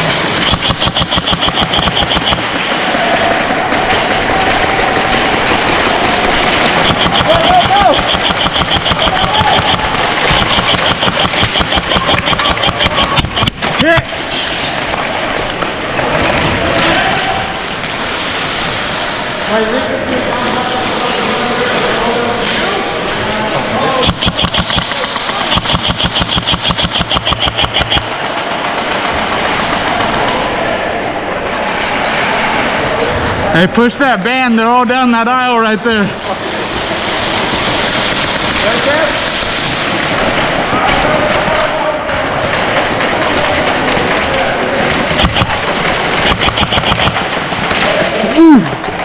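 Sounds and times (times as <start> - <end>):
airsoft gun full-auto burst: 0.0 - 14.0, 24.0 - 30.4, 36.4 - 41.8, 42.5 - 48.1.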